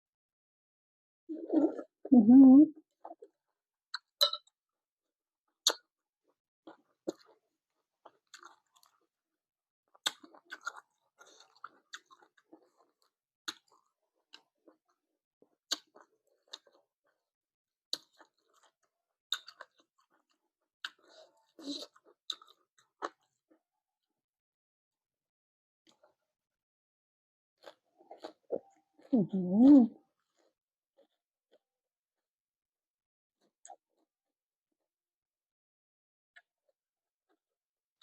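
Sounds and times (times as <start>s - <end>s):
chewing crunchy salad: 6.7s - 7.4s, 8.0s - 9.0s, 9.9s - 16.8s, 17.9s - 23.4s, 27.6s - 29.1s, 30.2s - 31.6s.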